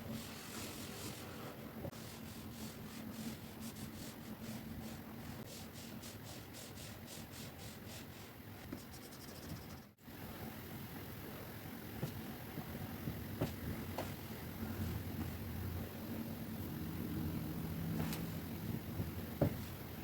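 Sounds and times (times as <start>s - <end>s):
steady background hiss: 0.0s - 20.0s
stylus scratching on tablet screen: 2.0s - 10.0s.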